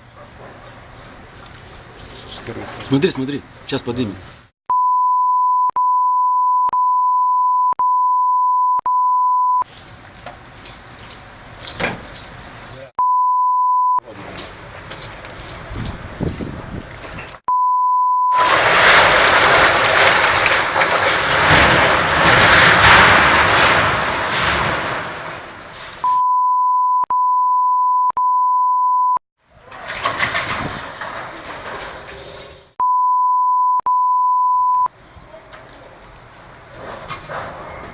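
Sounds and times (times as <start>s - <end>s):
steady high beep: 4.7s - 9.6s, 13.0s - 14.0s, 26.0s - 29.2s, 32.8s - 34.9s
strong gusty wind: 15.6s - 17.4s.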